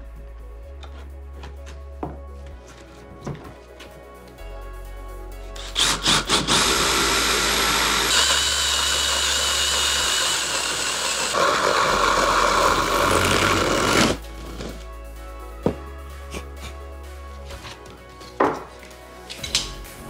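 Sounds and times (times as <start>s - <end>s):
power tool working wood: 5.6s - 14.2s.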